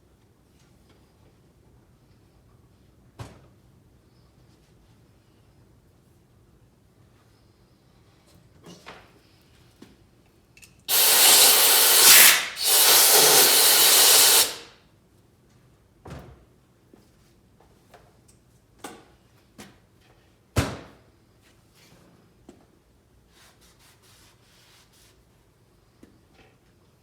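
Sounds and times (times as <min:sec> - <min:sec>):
shop tool hissing: 0:10.9 - 0:14.7.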